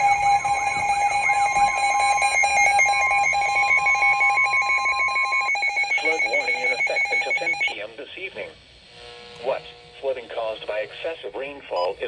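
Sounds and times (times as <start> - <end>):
electronic alarm tones: 0.0 - 7.8.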